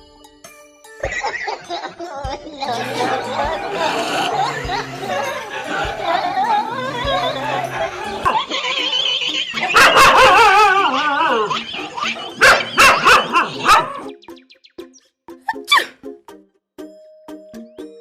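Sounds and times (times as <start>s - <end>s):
light music with plucked notes: 0.0s - 18.0s
dog howling: 2.8s - 14.1s
dog barking: 9.6s - 14.1s.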